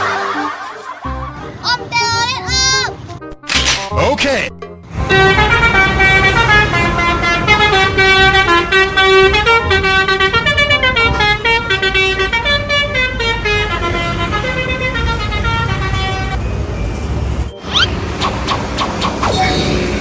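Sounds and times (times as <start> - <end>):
engine rumbling: 4.8 - 20.0
multi-tone bus horn tune: 4.9 - 20.0.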